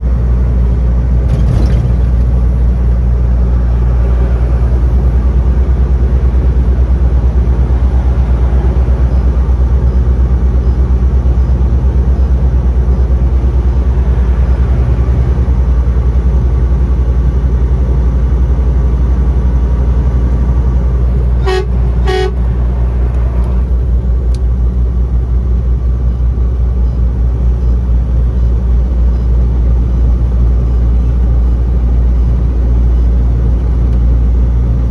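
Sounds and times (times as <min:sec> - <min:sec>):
truck engine and road rumble: 0:00.0 - 0:34.9
truck horn blasts: 0:21.2 - 0:23.6.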